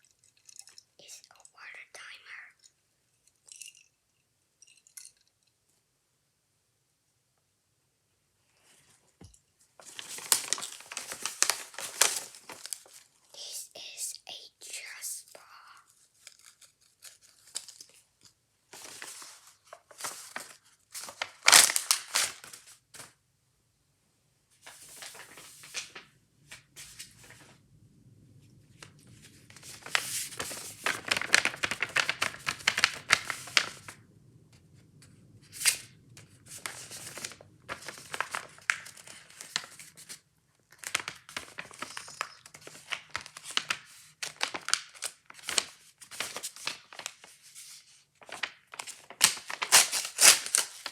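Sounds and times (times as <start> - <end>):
packaging tearing and crinkling: 9.8 - 13.1, 16.0 - 18.1, 18.8 - 23.1, 29.6 - 33.9, 36.5 - 47.3, 48.2 - 50.9.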